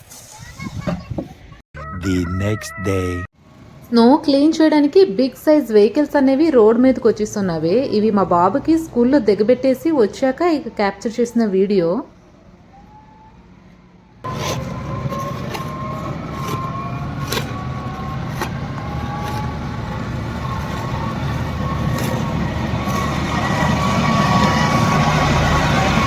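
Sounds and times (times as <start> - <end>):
truck engine rumble with whine: 3.4 - 26.0.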